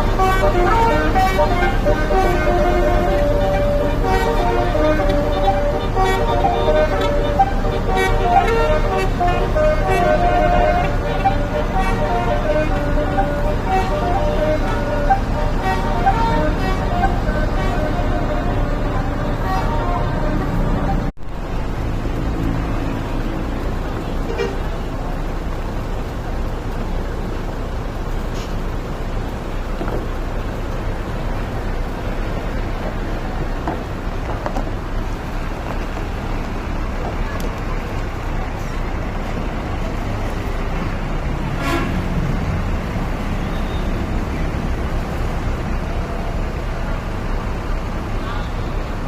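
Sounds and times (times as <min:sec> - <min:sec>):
bus horn toots: 0:00.0 - 0:22.0, 0:22.8 - 0:25.0, 0:41.4 - 0:45.2
bus engine and road rumble: 0:00.0 - 0:49.0
short horn toot: 0:41.6 - 0:42.1.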